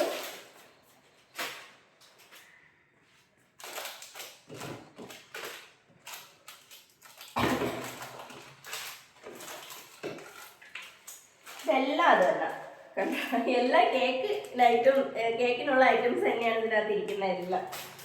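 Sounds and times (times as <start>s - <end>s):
plastic packaging rustling: 0.0s - 15.6s, 16.2s - 18.0s
container clunk: 7.3s - 8.5s.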